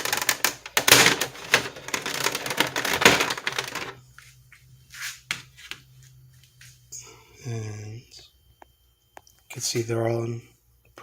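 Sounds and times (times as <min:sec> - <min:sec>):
plastic clicks and rattling: 0:00.0 - 0:04.0
soft brushing sounds: 0:04.2 - 0:06.8.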